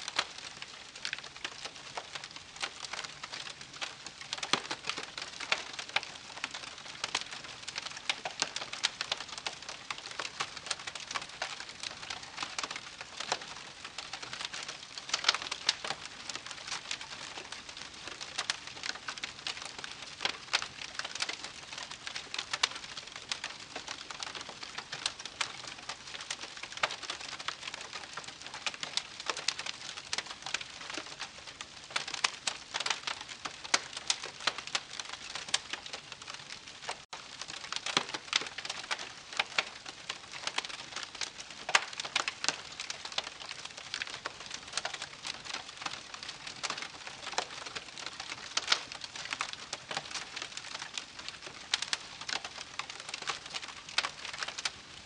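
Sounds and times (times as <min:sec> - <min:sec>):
campfire crackling and popping: 0:00.0 - 0:55.0.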